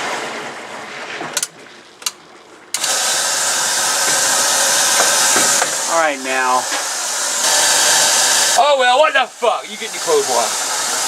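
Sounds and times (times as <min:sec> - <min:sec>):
sharp clicks: 0:01.4 - 0:02.9
washing machine running: 0:02.8 - 0:11.0.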